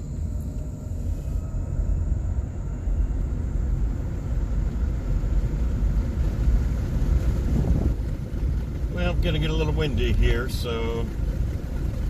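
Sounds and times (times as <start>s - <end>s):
road and wind noise in car: 0.0s - 12.0s.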